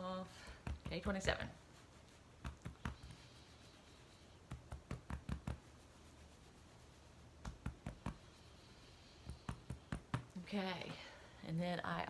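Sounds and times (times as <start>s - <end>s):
fingertips tapping on skin: 0.3s - 6.2s, 7.2s - 11.0s.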